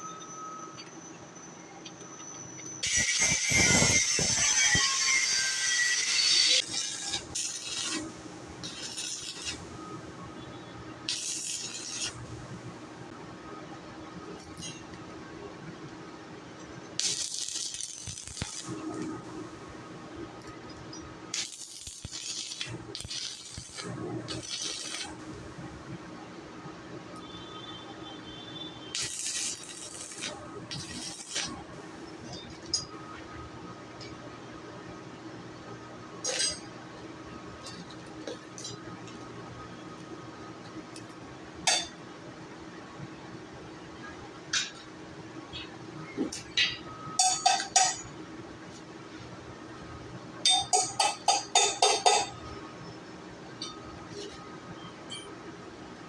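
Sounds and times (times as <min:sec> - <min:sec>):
welding arc crackling: 0:02.8 - 0:10.2, 0:11.0 - 0:13.1, 0:16.9 - 0:26.1, 0:28.9 - 0:32.8
steady low hum: 0:06.7 - 0:27.1.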